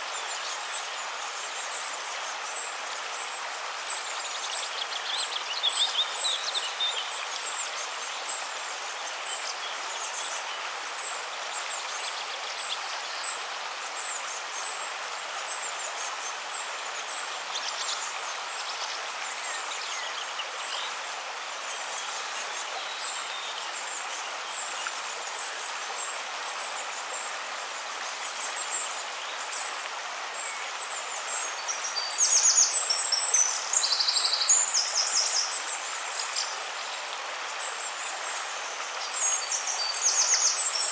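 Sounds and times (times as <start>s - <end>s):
river water running: 0.0s - 40.9s
small birds chirping: 15.4s - 40.9s.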